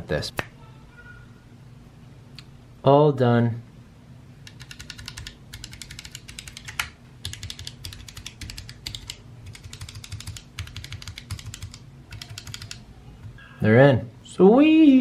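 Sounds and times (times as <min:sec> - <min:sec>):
mechanical keyboard clicks: 0:04.5 - 0:12.8.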